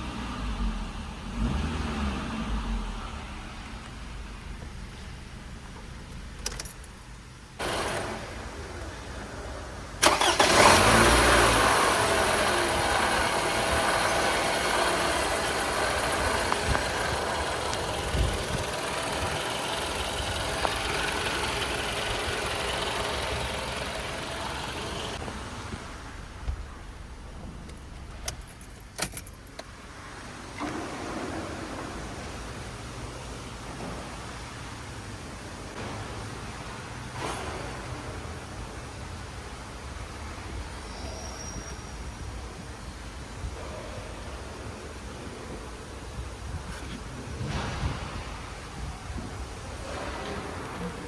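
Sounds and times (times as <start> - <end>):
car engine starting and idling: 0.0 - 40.3.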